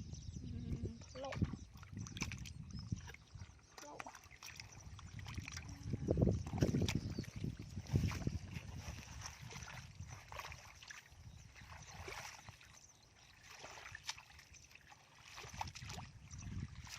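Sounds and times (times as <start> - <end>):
shallow water sloshing: 0.7 - 16.9
small irregular splashes: 1.2 - 16.9.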